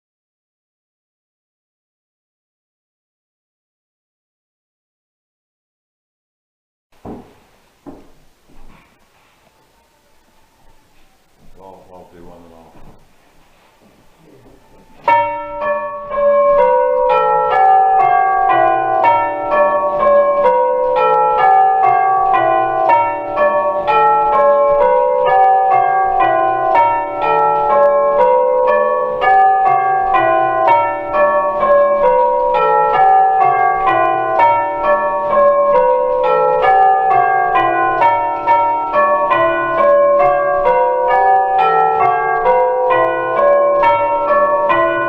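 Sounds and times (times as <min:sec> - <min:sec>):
tubular bells ringing: 0:14.6 - 0:45.0.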